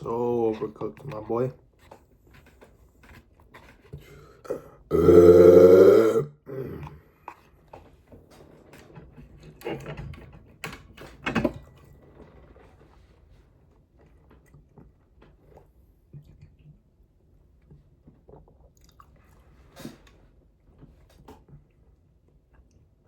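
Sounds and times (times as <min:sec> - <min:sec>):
loud burp: 0:04.5 - 0:07.0.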